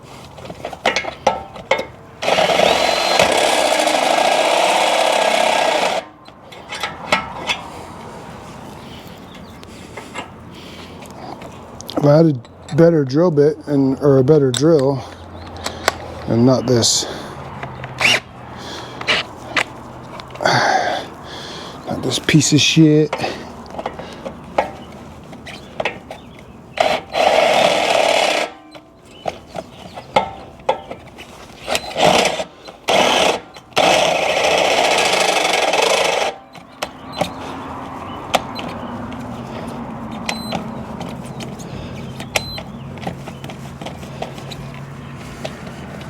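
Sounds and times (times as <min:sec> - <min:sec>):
power drill boring into steel: 0:02.2 - 0:06.1, 0:18.0 - 0:18.3, 0:26.8 - 0:28.6, 0:31.6 - 0:36.4.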